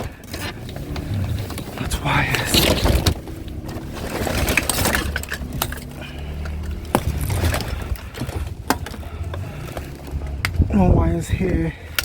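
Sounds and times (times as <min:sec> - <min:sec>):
junk clattering: 0:00.0 - 0:10.7.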